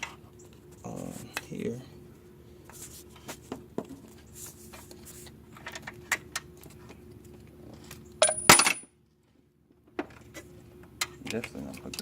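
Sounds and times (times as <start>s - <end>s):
steady low hum: 0.0s - 12.0s
metallic clicks and taps of tools: 11.2s - 12.0s.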